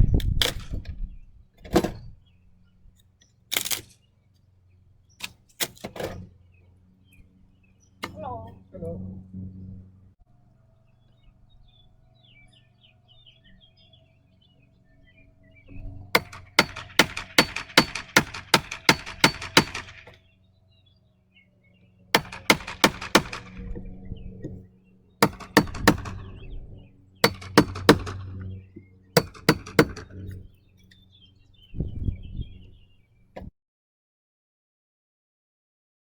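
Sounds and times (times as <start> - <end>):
hammer driving nails into wood: 3.5 - 3.9, 16.2 - 20.2, 22.2 - 23.6, 25.2 - 26.2, 27.2 - 28.4, 29.2 - 30.2.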